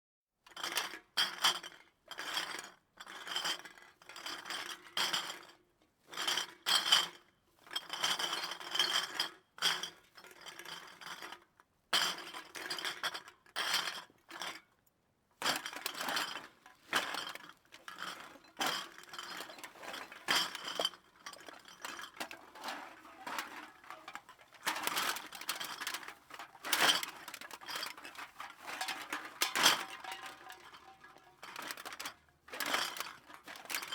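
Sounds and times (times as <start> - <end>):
glass bottles clinking: 18.0 - 33.9.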